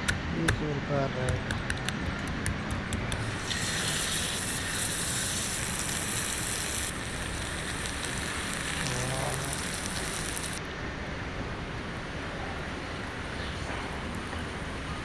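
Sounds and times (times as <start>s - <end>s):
fish sizzling in hot oil: 3.2s - 10.6s.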